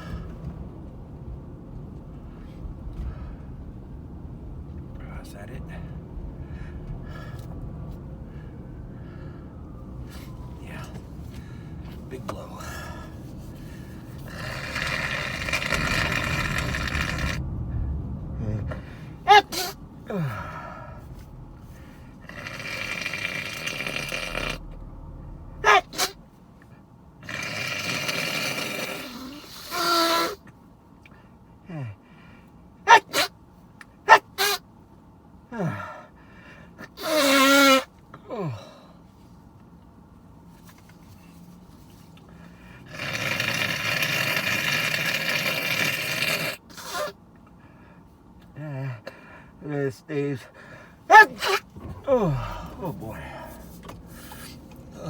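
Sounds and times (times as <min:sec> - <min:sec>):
person blowing nose: 0:14.3 - 0:17.4, 0:22.2 - 0:24.6, 0:27.3 - 0:30.4, 0:37.0 - 0:37.9, 0:42.8 - 0:47.1
person sneezing: 0:18.8 - 0:20.9, 0:25.6 - 0:26.2, 0:27.8 - 0:30.4, 0:32.9 - 0:33.3, 0:36.8 - 0:38.8, 0:42.9 - 0:47.2, 0:51.1 - 0:55.0.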